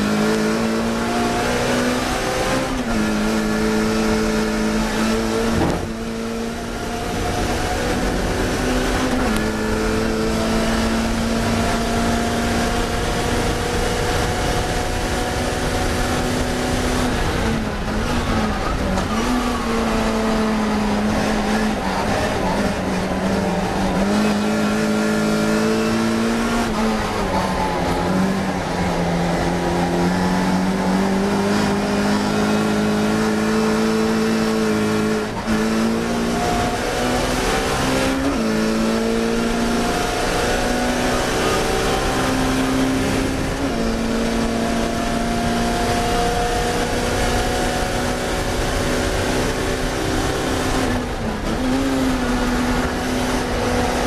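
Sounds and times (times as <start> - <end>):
race car engine revving: 0.0 - 54.0.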